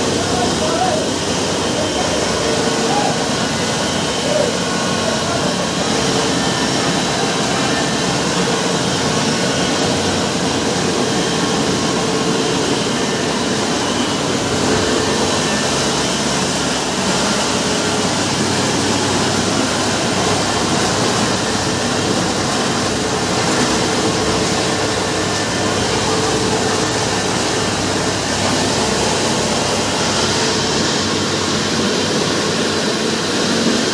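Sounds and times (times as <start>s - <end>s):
rice mill machine whirring: 0.0s - 33.9s.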